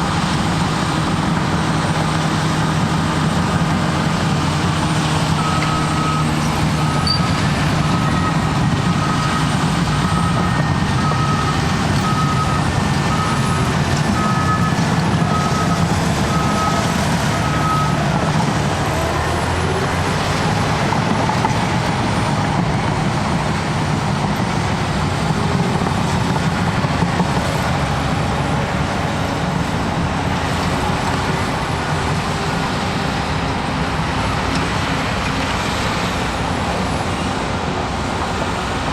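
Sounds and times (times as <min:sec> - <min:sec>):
bulldozer diesel engine running: 0:00.0 - 0:38.9
reversing alarm beeping: 0:05.3 - 0:18.5.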